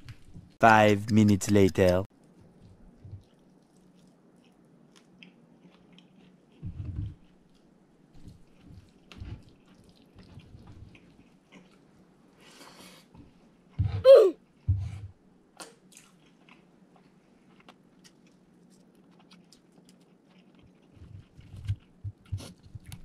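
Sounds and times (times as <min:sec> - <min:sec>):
person chewing: 0:02.2 - 0:13.8, 0:15.6 - 0:23.0
clicks and thuds handling food: 0:06.5 - 0:11.1, 0:18.0 - 0:23.0.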